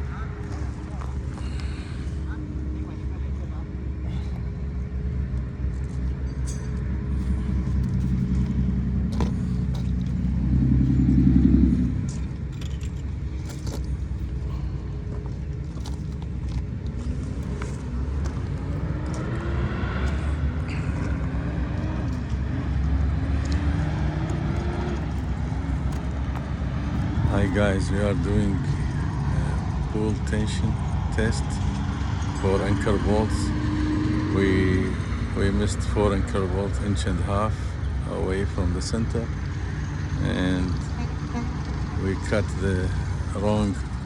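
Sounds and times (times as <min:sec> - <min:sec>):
engine running low: 0:00.0 - 0:44.0.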